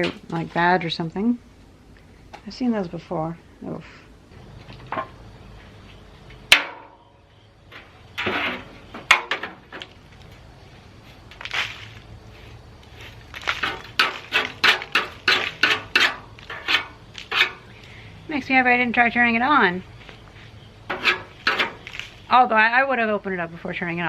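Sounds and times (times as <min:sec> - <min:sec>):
metal clanks and knocks: 0:04.6 - 0:05.2, 0:06.5 - 0:07.1, 0:07.7 - 0:10.0, 0:13.4 - 0:17.7, 0:20.9 - 0:22.0
metal scrapes: 0:07.7 - 0:09.8, 0:12.9 - 0:17.8, 0:20.4 - 0:22.3.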